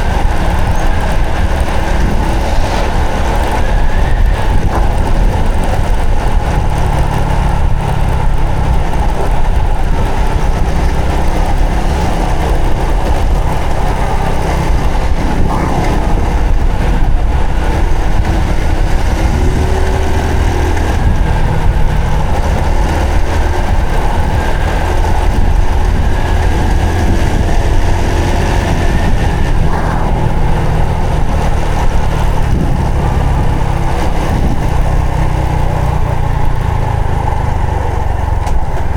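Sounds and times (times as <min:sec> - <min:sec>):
constant rushing noise: 0:00.0 - 0:38.9
motorcycle engine running: 0:00.0 - 0:38.9.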